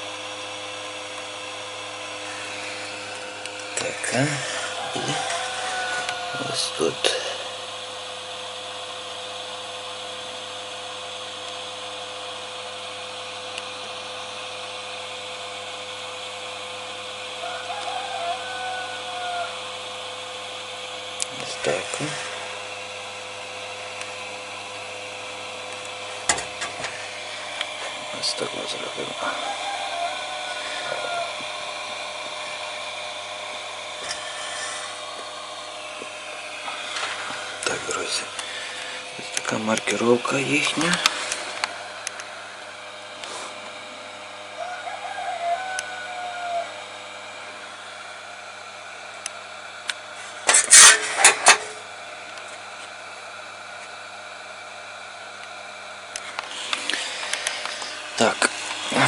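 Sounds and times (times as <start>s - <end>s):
blower whirring hiss: 0.0s - 59.0s
steady hum: 0.0s - 59.0s.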